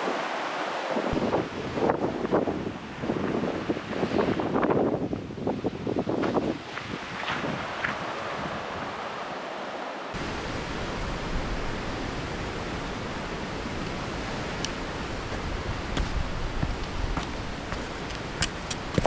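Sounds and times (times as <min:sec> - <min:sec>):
gale-force wind on microphone: 0:00.0 - 0:09.4, 0:10.1 - 0:19.0
low buffeting rumble: 0:10.2 - 0:19.0.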